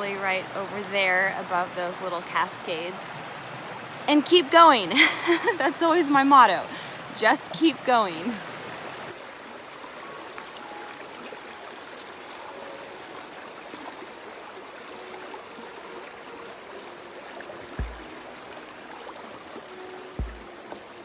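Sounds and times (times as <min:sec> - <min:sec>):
creek rushing over cascades: 0:08.2 - 0:21.0
low thump: 0:17.8 - 0:18.2, 0:20.2 - 0:20.5.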